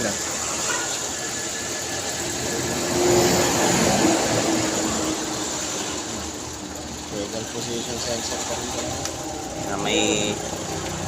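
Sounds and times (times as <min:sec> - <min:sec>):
car engine running: 0:00.0 - 0:11.0.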